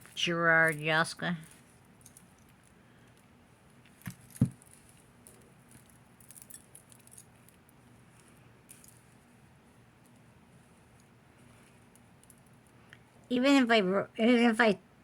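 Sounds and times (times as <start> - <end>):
light clicks and clinks: 0.0 - 9.4.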